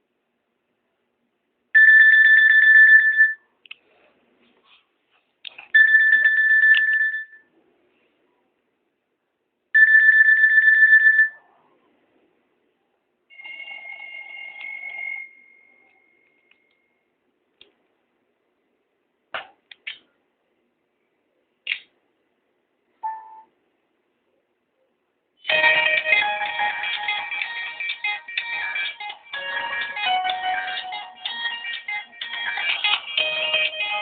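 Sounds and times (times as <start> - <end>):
high trilling phone ringtone: 1.8 - 3.4, 5.8 - 7.4, 9.8 - 11.4, 13.3 - 15.9, 25.5 - 34.0.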